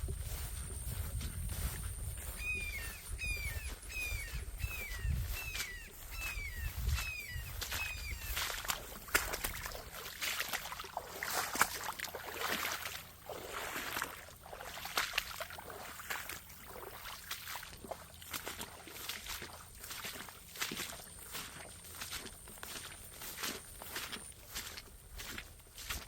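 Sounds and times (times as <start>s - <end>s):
brush rustling: 0.0s - 12.8s
footsteps crackling: 0.0s - 14.2s, 17.2s - 26.0s
bird chirping: 1.9s - 9.4s.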